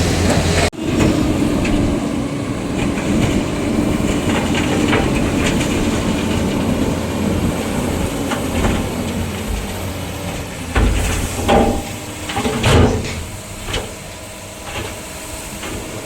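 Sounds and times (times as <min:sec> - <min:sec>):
heavy diesel machinery running: 0:00.0 - 0:16.0
metallic clanks and knocks: 0:02.8 - 0:14.0.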